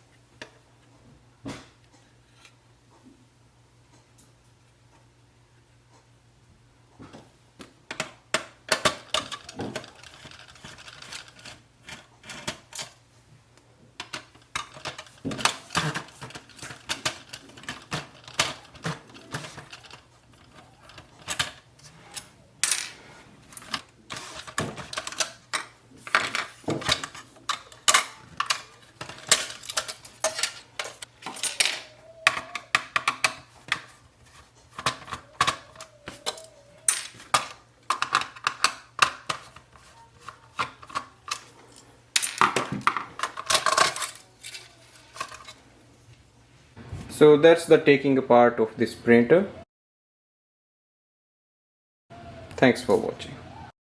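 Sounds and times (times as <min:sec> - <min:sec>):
plastic and metal parts clicking: 0:07.9 - 0:13.0, 0:14.0 - 0:22.8, 0:23.5 - 0:45.6.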